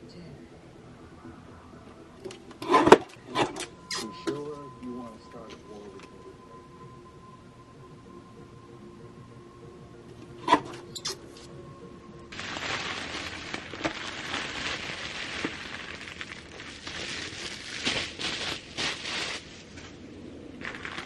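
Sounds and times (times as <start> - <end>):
faint steady tone: 0.0 - 17.6
rustling and crackling handling: 12.3 - 21.0.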